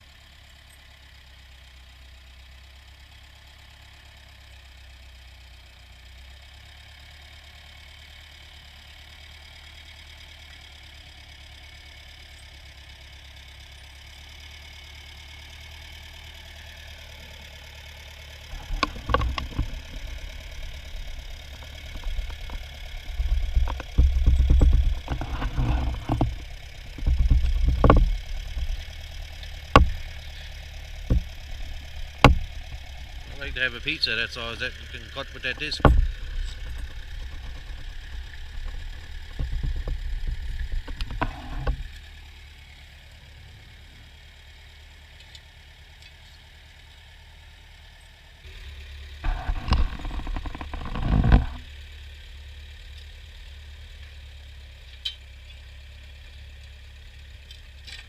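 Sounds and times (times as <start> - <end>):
tractor engine running: 0.0 - 58.0
low thumps and knocks: 18.5 - 41.9, 49.3 - 51.6.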